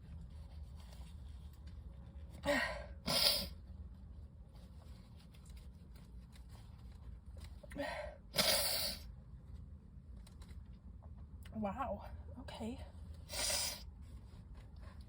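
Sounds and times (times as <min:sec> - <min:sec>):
woman sneezing: 0:07.8 - 0:09.0.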